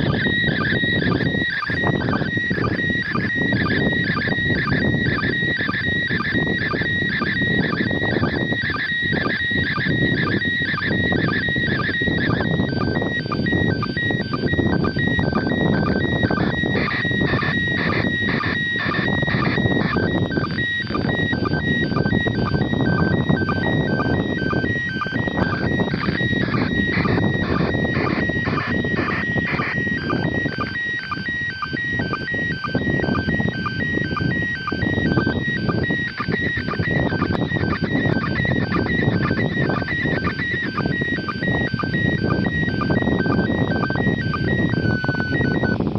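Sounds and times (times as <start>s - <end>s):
short electronic tone beeps: 0.0s - 45.8s
radio static hiss: 16.5s - 21.3s, 25.0s - 31.5s.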